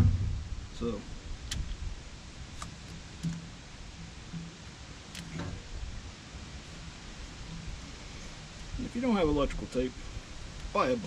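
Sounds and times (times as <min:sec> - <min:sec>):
faint clicks and knocks of parts: 0:02.5 - 0:05.7.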